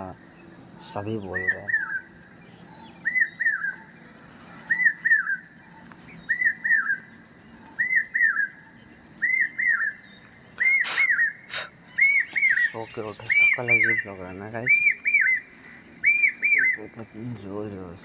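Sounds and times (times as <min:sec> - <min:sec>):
faint high bird chirps: 0:00.0 - 0:18.0
bird whistling short phrase: 0:10.6 - 0:14.1, 0:16.0 - 0:16.8.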